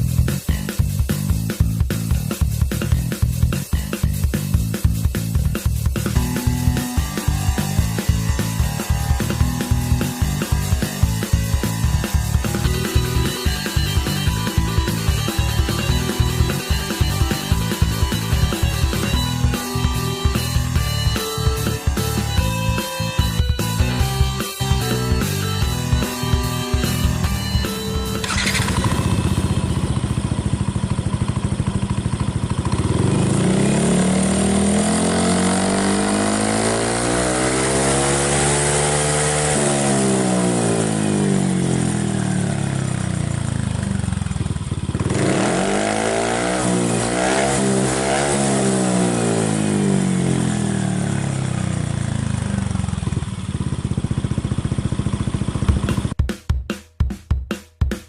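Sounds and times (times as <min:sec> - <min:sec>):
scooter engine revving: 0:00.0 - 0:56.2.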